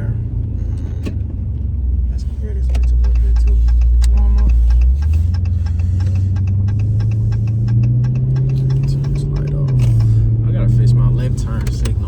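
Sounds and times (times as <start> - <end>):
car engine revving with deep drone: 0.0 - 12.0
light ticks: 2.7 - 10.2.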